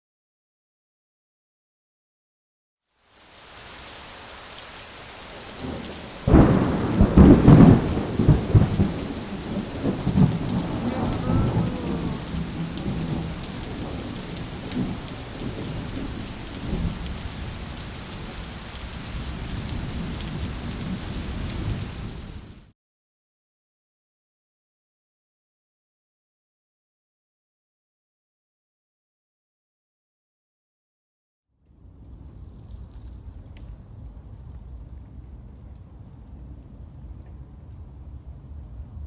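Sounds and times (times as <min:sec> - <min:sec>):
rain hissing: 0:03.0 - 0:22.7
thunder rumbling: 0:03.6 - 0:22.6.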